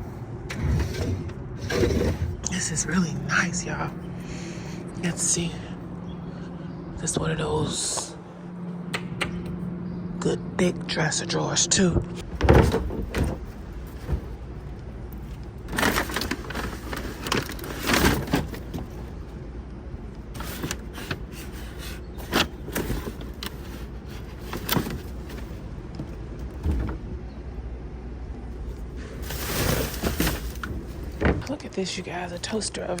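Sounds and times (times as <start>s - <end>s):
steady low rumble: 0.0s - 33.0s
knocks and scrapes of items: 0.5s - 2.6s, 20.3s - 27.1s, 29.0s - 31.5s.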